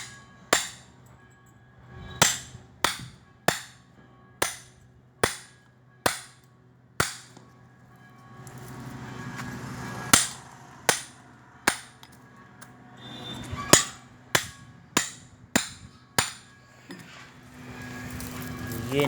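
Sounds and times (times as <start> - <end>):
hammer striking metal: 0.0 - 1.0, 2.1 - 7.4, 10.1 - 12.2, 13.6 - 17.1.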